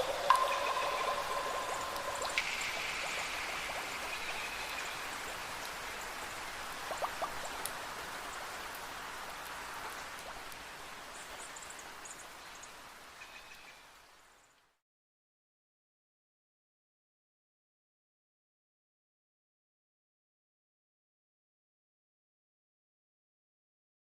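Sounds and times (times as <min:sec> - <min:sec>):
rain hiss: 0:00.0 - 0:14.7.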